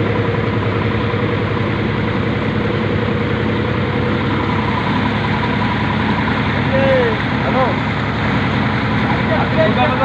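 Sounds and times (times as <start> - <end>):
vehicle engine running steadily: 0.0 - 10.0.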